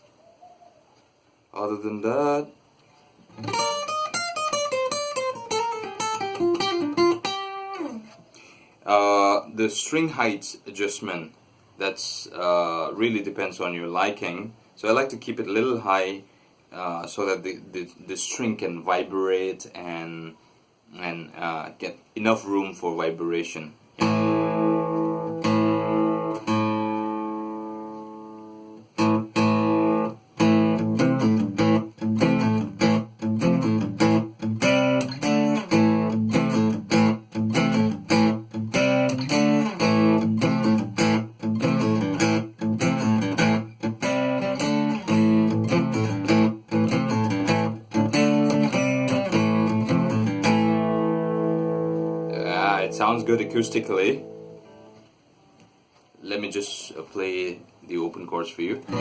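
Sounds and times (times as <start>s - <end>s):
acoustic guitar strumming: 3.4s - 8.2s, 24.0s - 55.1s, 58.8s - 59.0s.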